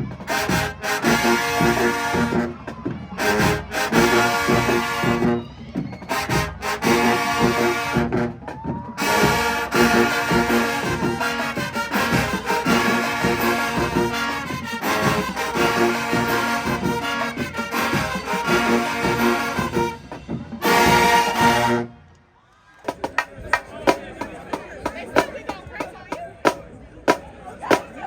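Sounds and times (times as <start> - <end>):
drums with a steady beat: 0.0 - 21.8, 22.8 - 28.0
marching band playing: 0.0 - 22.1, 22.8 - 28.0
trombones and trumpets: 0.0 - 22.1.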